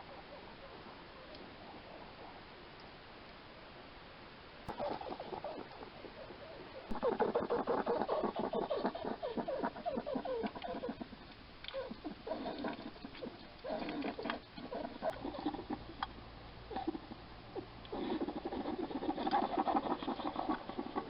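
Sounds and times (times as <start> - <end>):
hedgehog chomping wetly: 17.9 - 21.0.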